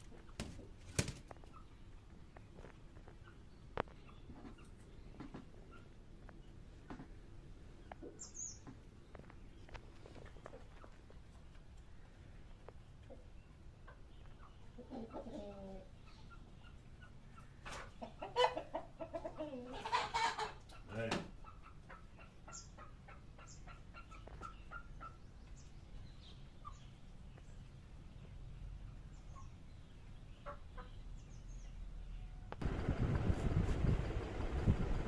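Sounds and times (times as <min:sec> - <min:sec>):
hen clucking: 0:00.0 - 0:07.1, 0:12.9 - 0:25.6, 0:30.3 - 0:31.3.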